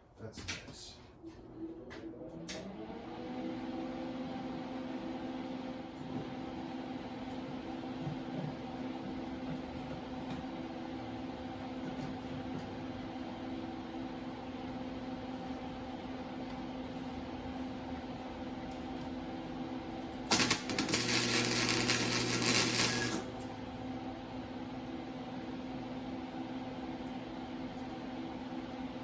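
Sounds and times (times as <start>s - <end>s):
steady low hum: 19.2s - 24.2s
power tool on metal: 20.3s - 23.4s.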